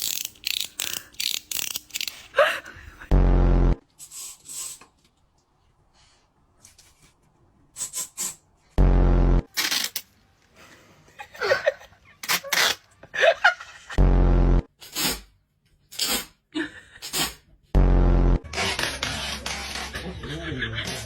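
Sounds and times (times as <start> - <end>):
loud buzzy blasts: 3.1 - 3.8, 8.8 - 9.5, 14.0 - 14.7, 17.8 - 18.5.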